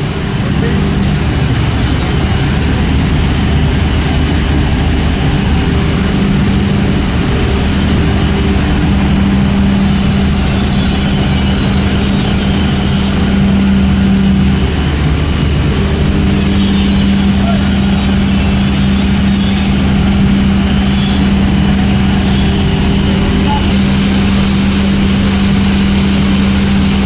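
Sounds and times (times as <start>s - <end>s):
machine humming: 0.0s - 27.0s
high hiss: 21.2s - 27.0s.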